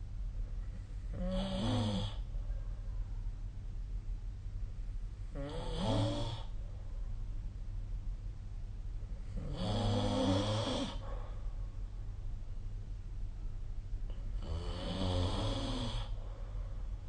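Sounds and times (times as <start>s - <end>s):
person snoring: 1.1s - 2.2s, 5.3s - 6.5s, 9.4s - 11.0s, 14.4s - 16.2s.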